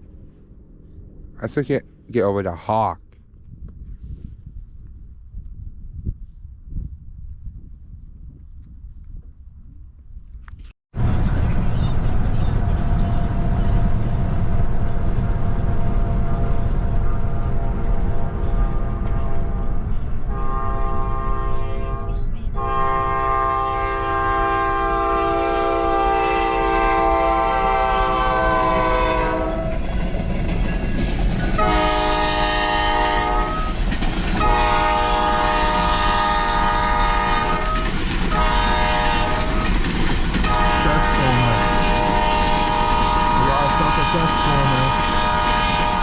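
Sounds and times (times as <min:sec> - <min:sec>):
passing train rumble: 0:00.0 - 0:03.0, 0:10.9 - 0:46.0
locomotive air horn blasts: 0:16.4 - 0:29.8, 0:31.6 - 0:33.8, 0:34.4 - 0:39.7, 0:40.5 - 0:46.0.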